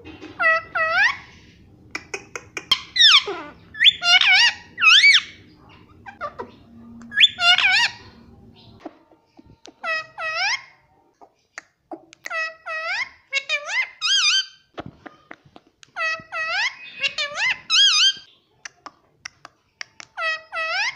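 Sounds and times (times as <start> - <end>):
parrot talking in squeaky voice: 0.3 - 1.3, 2.3 - 8.3, 9.4 - 10.8, 11.9 - 14.6, 16.0 - 18.3, 20.2 - 20.9
parrot clicks: 2.0 - 2.7
parrot squawk: 2.4 - 8.1, 9.8 - 10.8, 12.3 - 14.6, 16.0 - 18.3.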